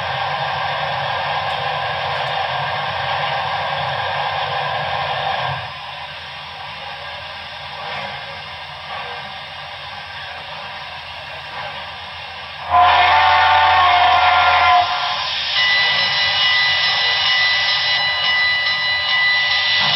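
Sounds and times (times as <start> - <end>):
steam hiss: 0.0 - 19.9
chime steam whistle blast: 12.6 - 19.9.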